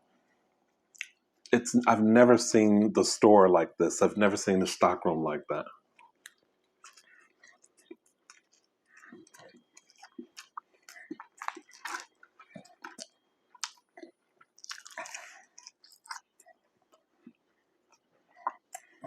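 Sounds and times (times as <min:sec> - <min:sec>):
close-up chewing: 0:05.9 - 0:19.0.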